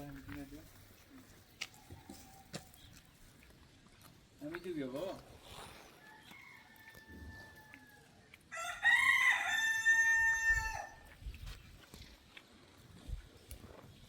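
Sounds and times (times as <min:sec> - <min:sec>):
rooster crowing: 0:06.0 - 0:11.1.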